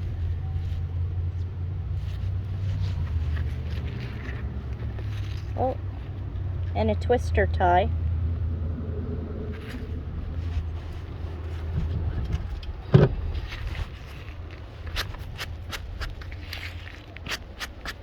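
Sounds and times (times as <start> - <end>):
light clicks and scrapes of debris: 0.0 - 6.8, 9.6 - 18.0
wind rumbling on microphone: 0.0 - 6.8, 7.9 - 18.0
thump: 12.9 - 13.3.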